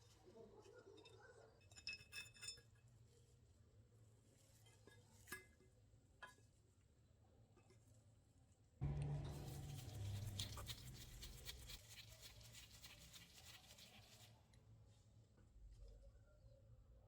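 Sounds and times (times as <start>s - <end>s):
low hum: 8.8s - 11.8s
rapid scratching strokes: 9.0s - 14.3s.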